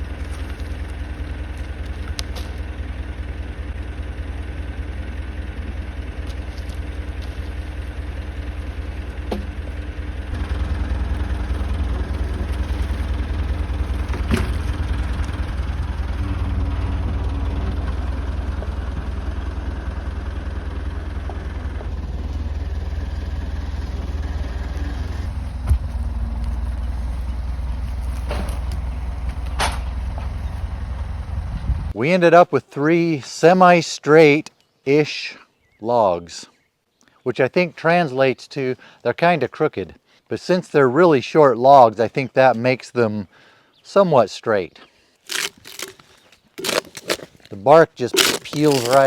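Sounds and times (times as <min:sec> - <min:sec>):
tractor engine running: 0:00.0 - 0:32.0, 0:45.2 - 0:49.0.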